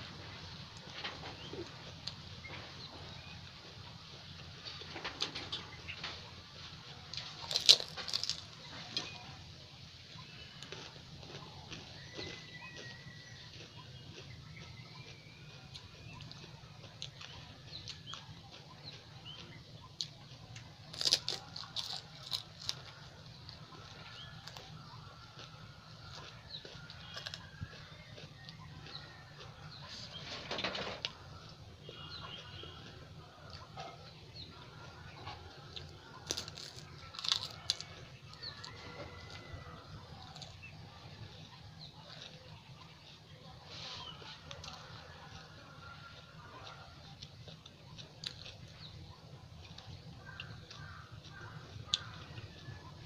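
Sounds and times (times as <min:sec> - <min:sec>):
crisp shell crunching: 0:07.0 - 0:09.2, 0:20.8 - 0:29.5, 0:35.5 - 0:40.8, 0:49.7 - 0:53.0
wet mouth clicks and chewing: 0:10.2 - 0:30.2, 0:31.8 - 0:39.4, 0:44.1 - 0:53.0.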